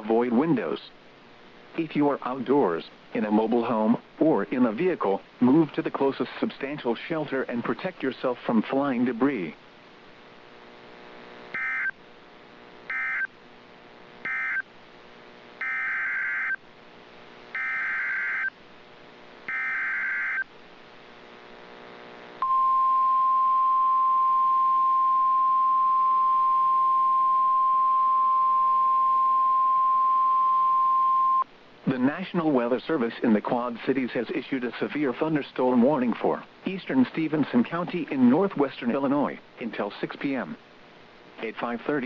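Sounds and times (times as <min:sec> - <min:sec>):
buzzy data bursts: 0:10.7 - 0:12.0, 0:12.7 - 0:14.7, 0:15.3 - 0:16.6, 0:19.5 - 0:20.4
steady alarm tone: 0:11.5 - 0:12.0, 0:12.9 - 0:13.3, 0:14.2 - 0:14.7, 0:15.6 - 0:16.6, 0:17.5 - 0:18.5, 0:19.5 - 0:20.4.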